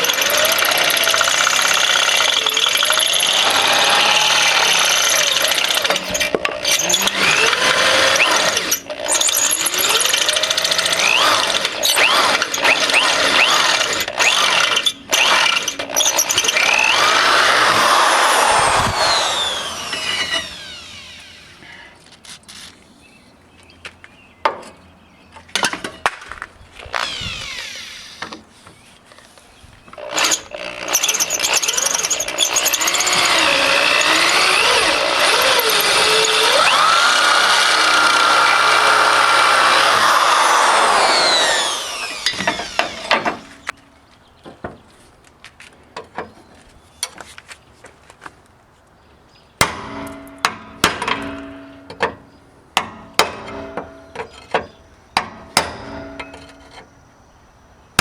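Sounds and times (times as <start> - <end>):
electric drill boring into steel: 0.0 - 21.8, 26.9 - 28.4, 30.0 - 43.7
hammer strikes on metal: 49.6 - 52.2, 52.8 - 56.8.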